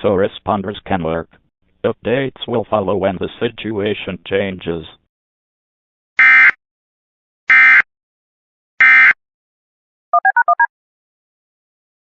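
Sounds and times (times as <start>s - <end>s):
touch-tone beeps: 10.2s - 10.7s.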